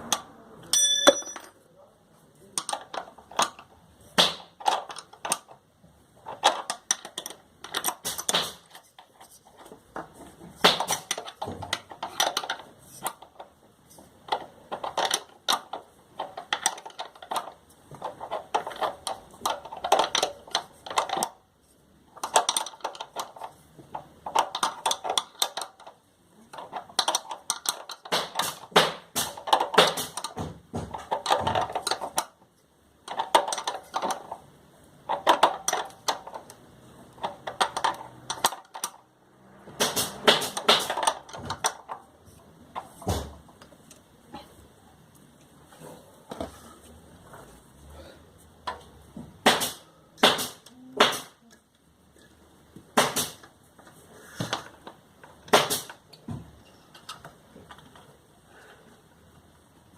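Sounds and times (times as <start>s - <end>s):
metal parts and tools clattering: 0.1s - 1.6s, 6.2s - 21.4s, 22.1s - 32.4s, 33.0s - 39.1s, 39.9s - 44.0s.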